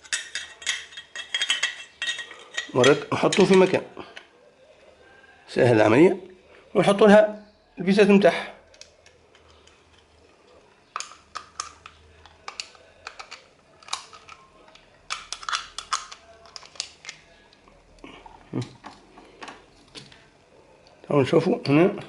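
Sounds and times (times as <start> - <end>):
small parts and screws clicking: 0.0 - 4.3, 10.9 - 17.6.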